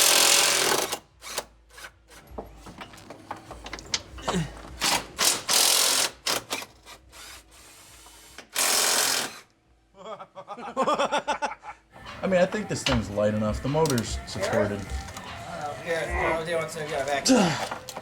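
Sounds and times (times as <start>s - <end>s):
air tool running: 6.9s - 9.5s.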